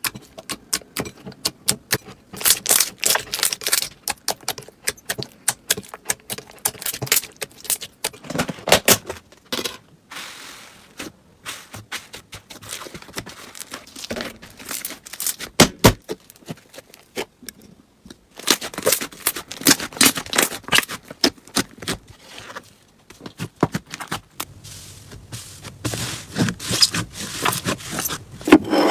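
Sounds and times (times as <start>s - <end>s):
slime crackling and popping: 2.4s - 7.8s, 13.6s - 16.4s.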